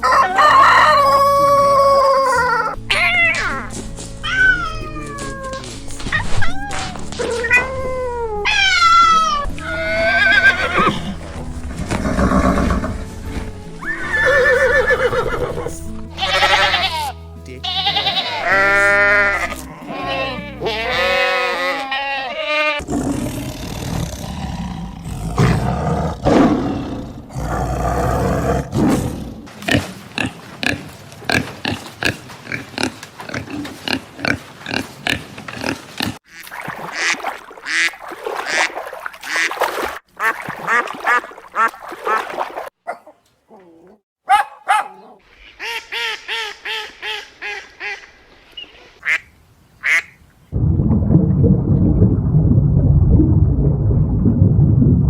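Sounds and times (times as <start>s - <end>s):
animal calls: 0.0s - 11.3s, 42.9s - 48.0s
background music: 0.0s - 22.2s.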